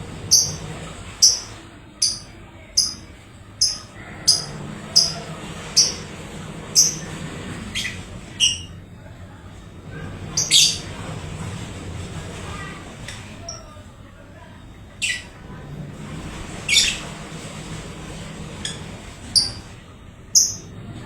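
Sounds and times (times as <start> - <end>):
lovebird high-pitched chirps: 0.3 - 6.1, 6.8 - 8.8, 10.4 - 10.9, 15.0 - 15.3, 16.7 - 17.1, 18.6 - 19.7, 20.4 - 20.7
bird sweeping call: 10.4 - 10.9.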